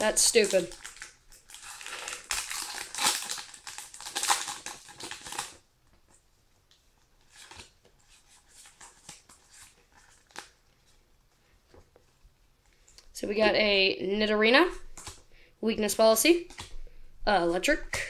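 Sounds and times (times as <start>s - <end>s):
foil wrapper crinkling: 0.0s - 5.6s.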